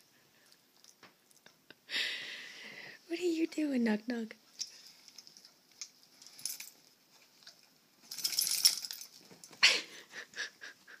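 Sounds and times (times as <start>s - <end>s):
jingling rattle: 4.5s - 6.9s, 8.0s - 9.6s.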